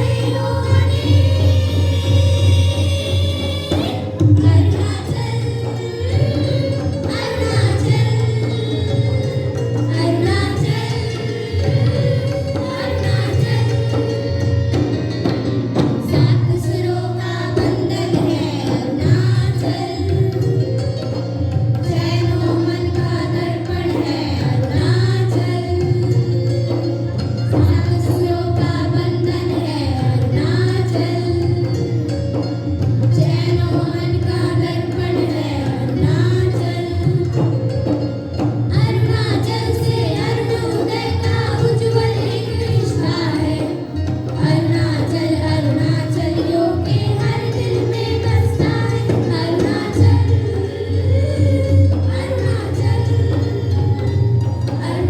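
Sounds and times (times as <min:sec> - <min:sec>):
people singing: 0:00.0 - 0:55.0.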